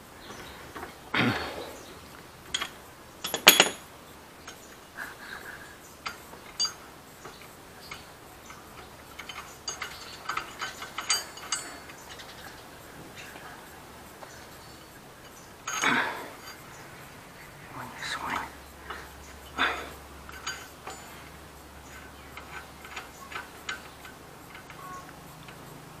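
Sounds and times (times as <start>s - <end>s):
ratchet clicking: 20.3s - 26.0s.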